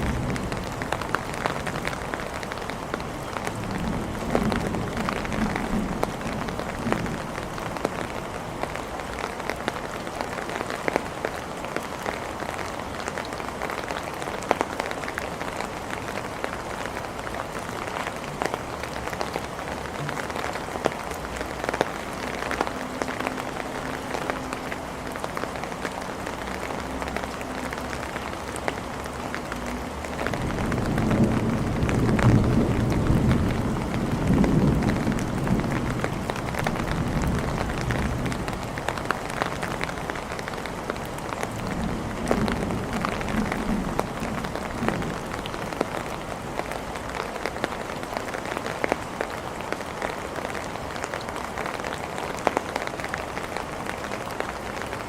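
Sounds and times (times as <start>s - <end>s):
raindrops tapping: 0.0s - 55.0s
steady rain falling: 0.0s - 55.0s
low rumble of thunder: 2.9s - 8.0s, 30.2s - 39.6s, 41.4s - 46.3s.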